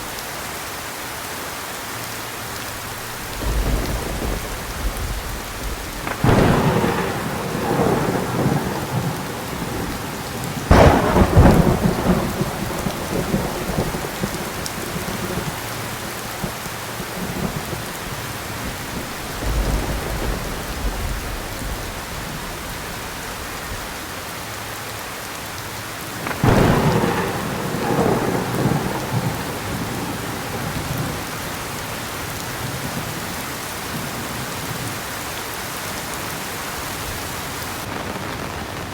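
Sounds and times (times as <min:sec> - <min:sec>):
heavy rain: 0:00.0 - 0:38.9
thunder cracks and rumble: 0:02.8 - 0:24.0, 0:26.2 - 0:35.0.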